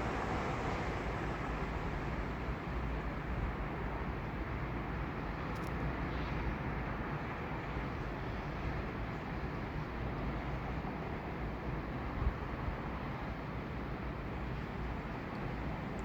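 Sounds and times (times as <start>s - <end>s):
hum of traffic: 0.0s - 16.0s.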